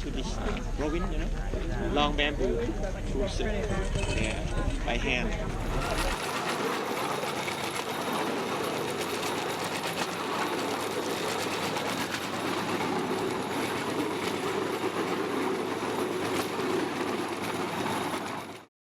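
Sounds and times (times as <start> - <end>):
train wheels clattering on rails: 3.9 - 18.7.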